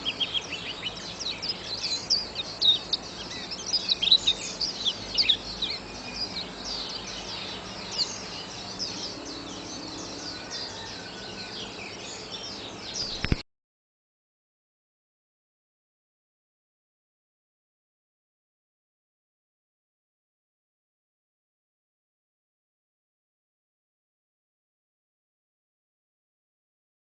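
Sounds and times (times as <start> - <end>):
bird high chirps and twitters: 0.0 - 13.4.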